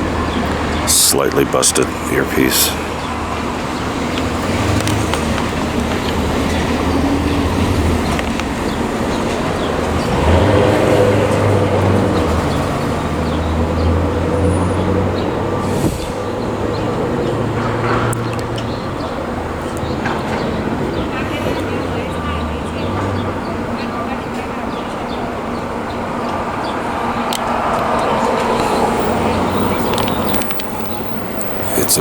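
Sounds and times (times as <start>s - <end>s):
road noise and engine hum: 0.0s - 32.0s
vehicle passing: 0.2s - 15.6s, 27.0s - 32.0s.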